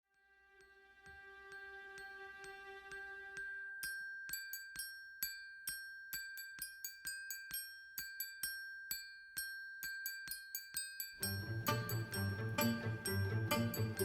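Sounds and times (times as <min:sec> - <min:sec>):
held high tone: 0:11.2 - 0:14.0.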